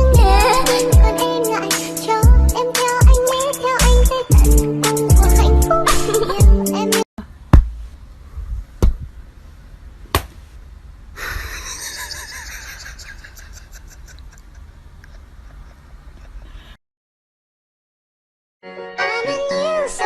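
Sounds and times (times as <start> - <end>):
low room rumble: 0.0 - 1.2, 7.2 - 16.8
sharp knocks: 7.5 - 7.9.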